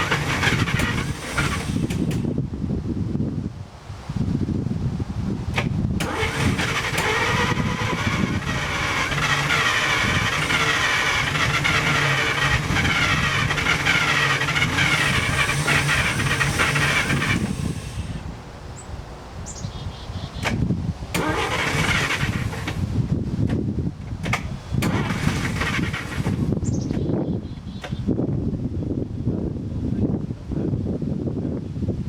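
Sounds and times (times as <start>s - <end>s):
car engine cranking on starter: 0.0s - 2.4s, 5.6s - 18.3s, 20.4s - 27.1s.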